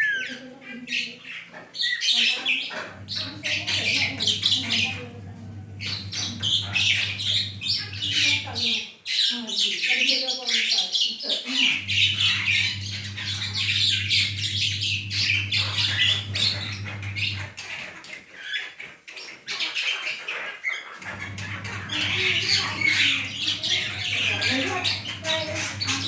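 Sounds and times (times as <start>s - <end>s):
starling squawks and chirps: 0.0s - 26.0s
steady low hum: 2.9s - 8.5s, 11.7s - 17.6s, 21.0s - 26.0s.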